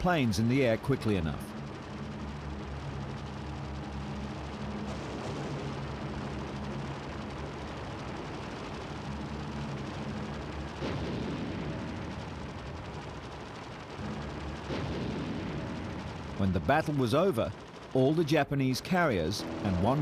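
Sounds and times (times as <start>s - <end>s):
low battle drone: 0.0s - 20.0s
heavy blast of gunfire or explosion: 14.6s - 16.1s.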